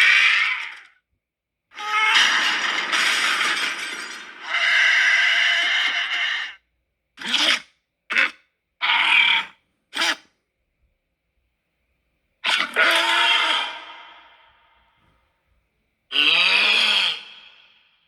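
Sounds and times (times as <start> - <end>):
cartoon creature calls: 0.0 - 1.0, 1.8 - 6.6, 7.2 - 10.2, 12.4 - 14.5, 16.1 - 17.8.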